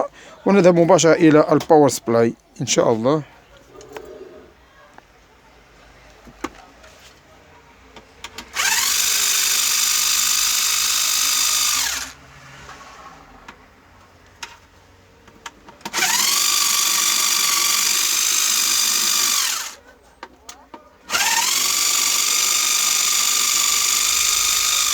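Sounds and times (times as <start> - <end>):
power screwdriver whirring: 8.4 - 12.2, 15.9 - 19.8, 21.1 - 24.9.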